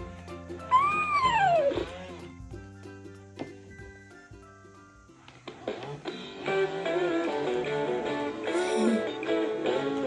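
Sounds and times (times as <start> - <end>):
plucked guitar-like melody: 5.8 - 10.0.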